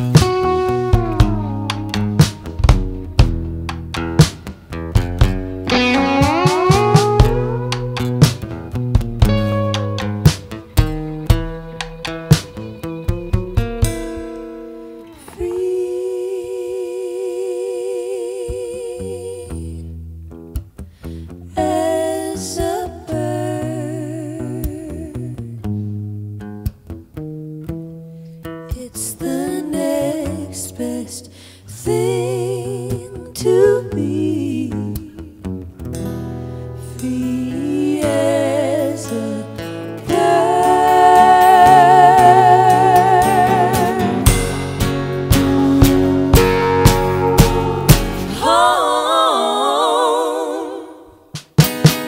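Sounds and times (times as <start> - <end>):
bass line: 0.0 - 15.2, 40.0 - 49.5
guitar chord: 0.0 - 15.4, 39.8 - 48.6
bass: 0.0 - 52.0
guitar: 0.0 - 52.0
women singing in harmony: 15.0 - 19.9, 21.5 - 25.4, 28.8 - 35.4, 36.8 - 44.5, 46.3 - 51.3.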